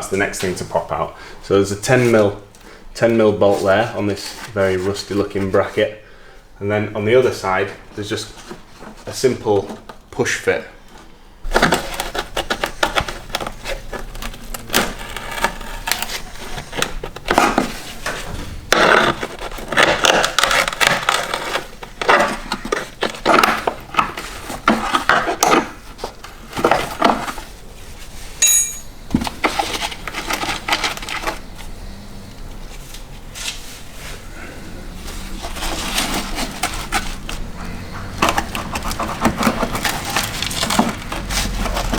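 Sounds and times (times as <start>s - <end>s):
metal hand tools clinking: 28.4s - 29.2s.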